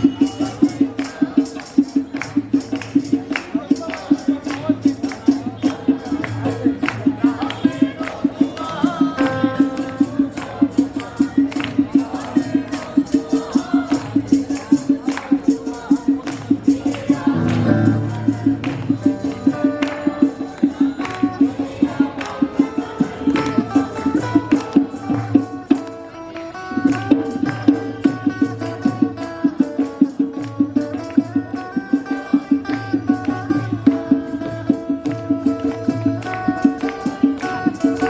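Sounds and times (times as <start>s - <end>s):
quick steady drum beat: 0.0s - 25.7s.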